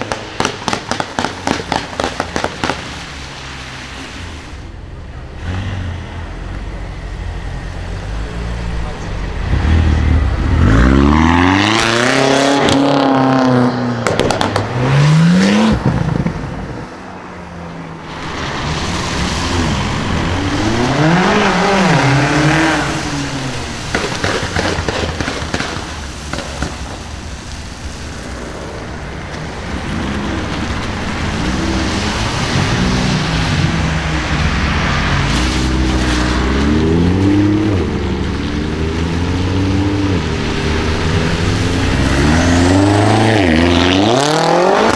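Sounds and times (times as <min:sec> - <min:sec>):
exhaust crackles: 0:18.0 - 0:44.9
car engine accelerating hard: 0:18.1 - 0:24.9, 0:29.7 - 0:44.9.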